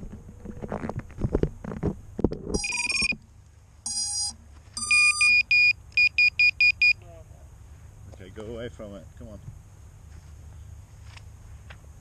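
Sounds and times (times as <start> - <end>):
electronic beeps: 2.6 - 3.2, 3.9 - 7.0.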